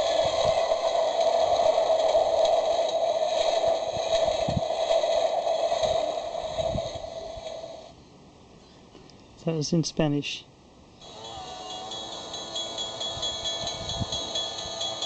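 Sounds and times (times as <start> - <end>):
electronic warning bell ringing: 11.0 - 15.0.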